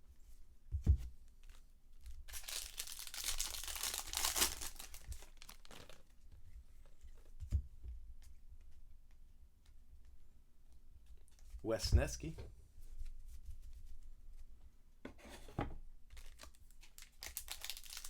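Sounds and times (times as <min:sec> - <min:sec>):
wrapper tearing and crinkling: 0:02.3 - 0:06.1, 0:16.2 - 0:18.0.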